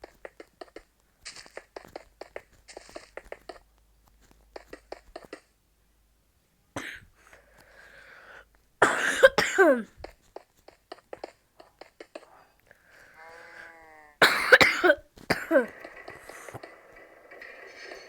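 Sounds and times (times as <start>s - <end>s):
person coughing: 6.8s - 7.1s, 8.8s - 10.0s, 14.2s - 16.6s.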